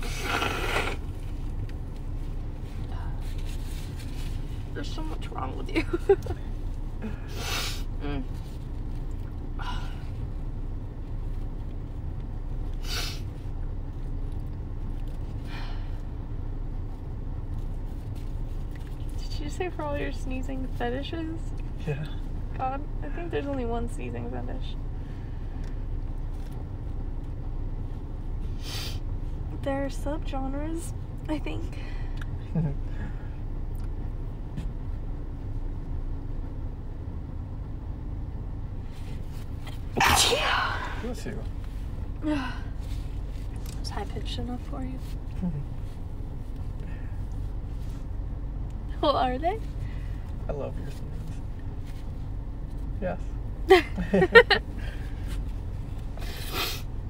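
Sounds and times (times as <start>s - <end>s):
car engine idling: 0.0s - 57.0s
faint steady hum: 0.0s - 57.0s
breathy sniffs: 7.3s - 7.9s, 56.2s - 56.9s.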